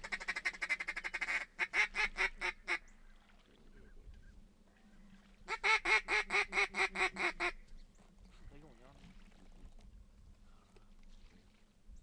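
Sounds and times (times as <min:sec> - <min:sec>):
duck call quacks: 0:00.0 - 0:02.8, 0:05.5 - 0:07.6.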